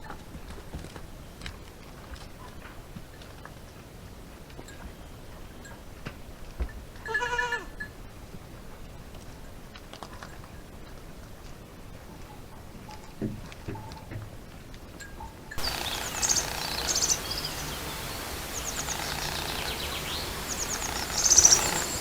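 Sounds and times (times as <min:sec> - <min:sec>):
goat bleating: 0:07.1 - 0:07.7.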